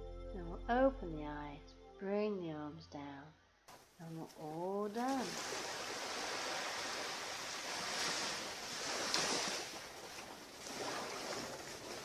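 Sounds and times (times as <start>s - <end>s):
surf washing on a beach: 5.0s - 12.0s.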